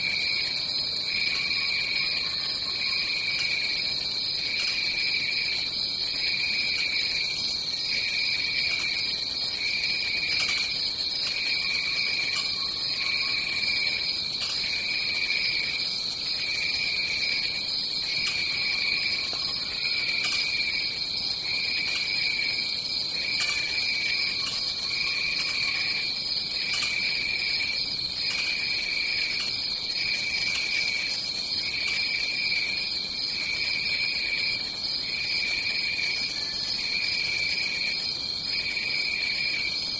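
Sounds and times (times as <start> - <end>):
insects buzzing: 0.0 - 39.9.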